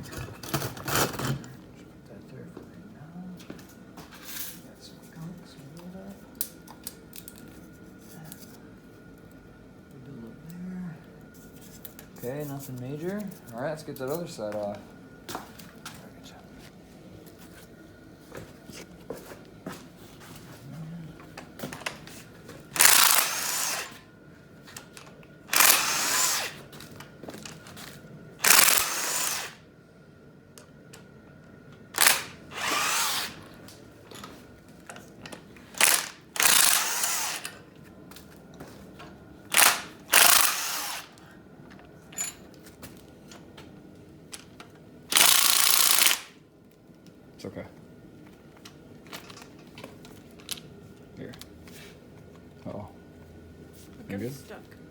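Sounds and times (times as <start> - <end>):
power wrench bursts: 22.7 - 24.0, 25.5 - 26.6, 28.4 - 29.6, 32.0 - 33.5, 35.7 - 37.6, 39.5 - 41.2, 45.1 - 46.4.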